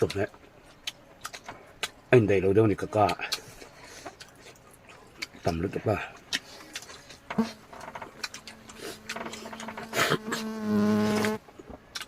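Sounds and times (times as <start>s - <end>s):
chewing smacks and clicks: 0.0s - 2.0s, 3.0s - 7.2s, 8.1s - 10.2s, 11.2s - 12.0s
buzzing hum: 7.2s - 11.5s.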